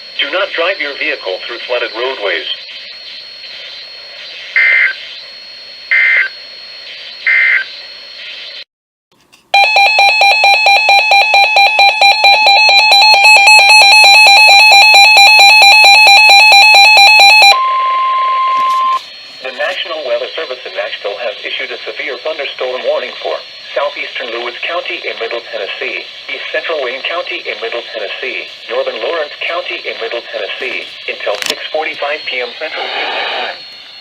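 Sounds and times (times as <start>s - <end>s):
radio hiss: 0.0s - 5.6s, 18.6s - 34.0s
steady warning alarm tone: 0.0s - 8.6s, 9.5s - 34.0s
electronic alarm beeping rapidly: 0.1s - 7.8s, 9.6s - 19.6s, 31.1s - 34.0s
digital data tones: 11.1s - 34.0s.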